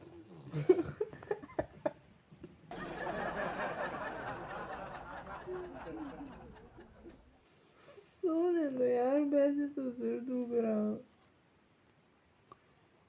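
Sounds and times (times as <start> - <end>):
man fake snoring: 0.0 - 0.9.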